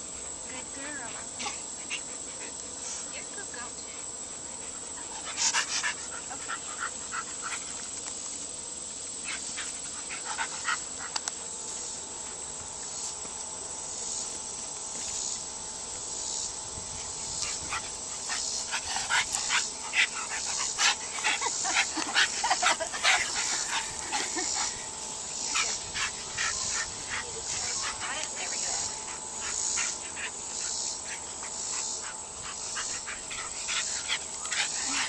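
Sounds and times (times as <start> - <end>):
dogs scuffling and clicking: 1.0 - 13.6, 17.0 - 35.0.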